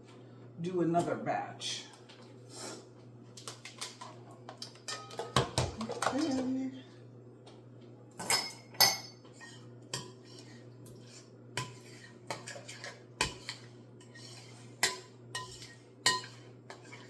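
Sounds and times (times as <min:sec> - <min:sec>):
dishes and utensils clinking: 0:03.4 - 0:06.6, 0:08.2 - 0:17.0.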